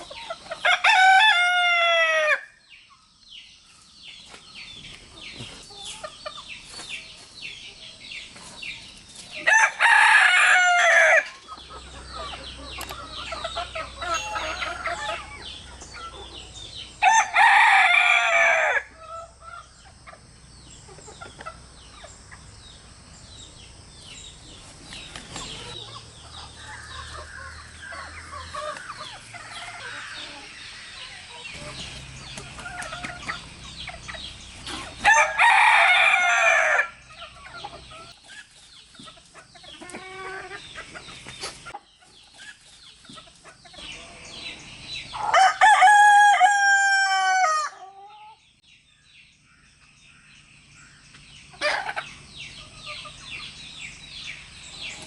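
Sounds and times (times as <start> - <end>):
hens clucking: 0.0 - 2.0, 4.2 - 17.0, 18.2 - 22.6, 23.5 - 45.8, 51.1 - 55.0
rooster crowing: 0.6 - 2.5, 9.5 - 11.3, 17.0 - 19.3, 35.0 - 37.0, 45.1 - 48.2.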